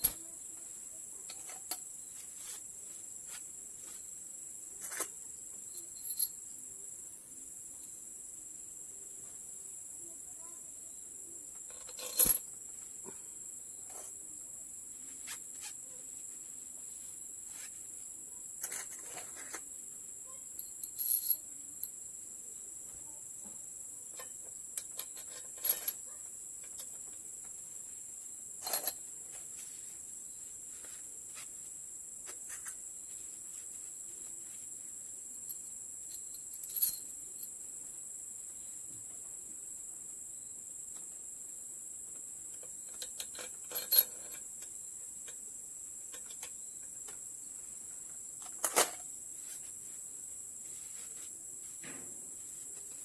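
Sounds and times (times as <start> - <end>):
metallic clinks and knocks of tools: 5.7 - 6.4, 11.7 - 12.6, 20.6 - 22.0, 24.1 - 27.2, 28.6 - 29.0, 35.5 - 37.5, 42.5 - 44.7.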